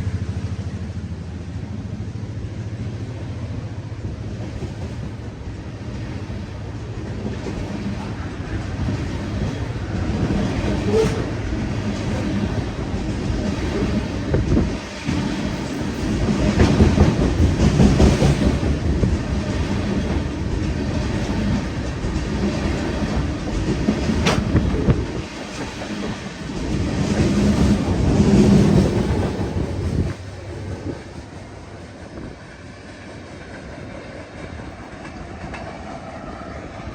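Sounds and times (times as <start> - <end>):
quiet train rumble: 0.0 - 36.9
train wheels clattering: 4.3 - 32.8.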